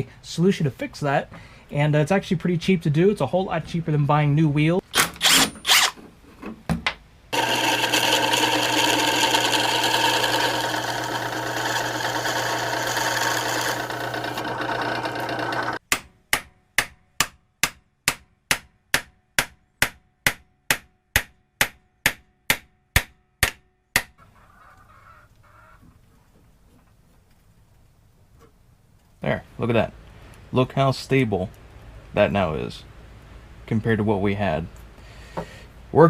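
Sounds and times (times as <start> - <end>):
power drill running: 5.2 - 6.0, 7.4 - 15.8.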